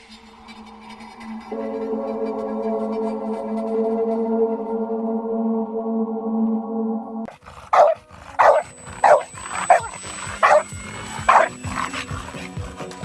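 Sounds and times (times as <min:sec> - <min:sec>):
dog barking: 0:07.3 - 0:12.0.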